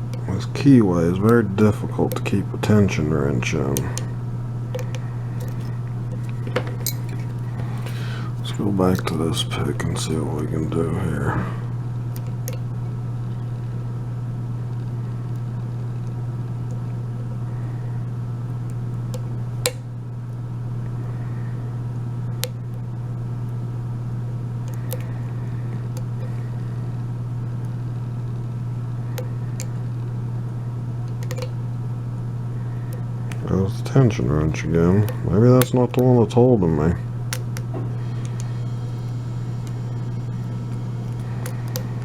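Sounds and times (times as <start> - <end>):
steady low hum: 0.0 - 42.0
lock pick clicking in padlock: 31.1 - 31.5.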